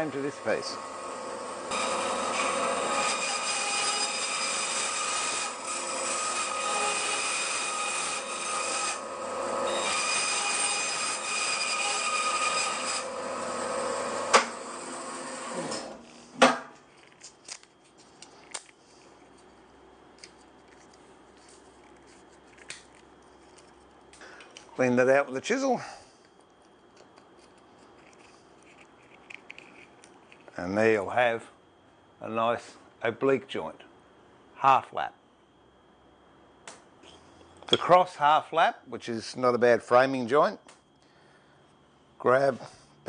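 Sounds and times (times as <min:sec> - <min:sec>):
bandsaw cutting timber: 0:00.0 - 0:16.0.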